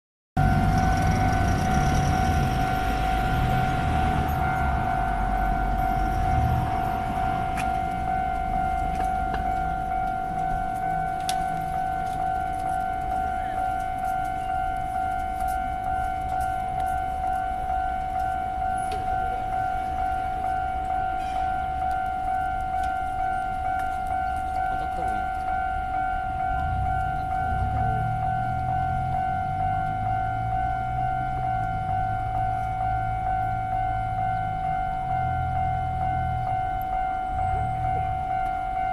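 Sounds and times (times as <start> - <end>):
level crossing alarm tone: 0.4 - 38.9
passing vehicles rumbling: 0.4 - 38.9.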